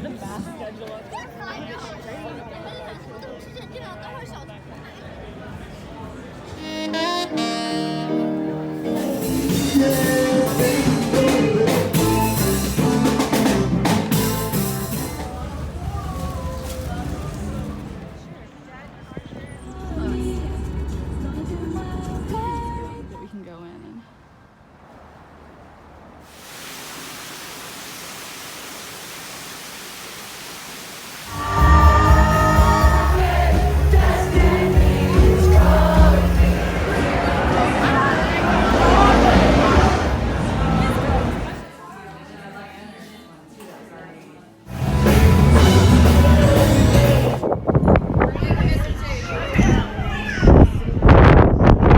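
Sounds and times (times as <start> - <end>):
music with drum kit: 8.9 - 15.5, 31.3 - 36.9, 44.7 - 47.5.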